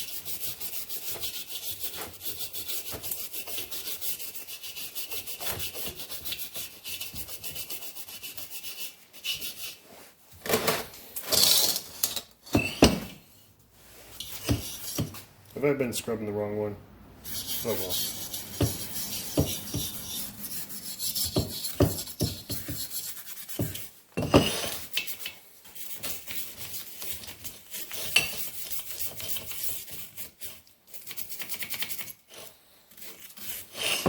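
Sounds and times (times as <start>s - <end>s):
brush scrubbing metal: 0.0s - 10.1s, 17.2s - 24.0s, 24.7s - 34.0s
sharp knocks: 18.5s - 20.0s.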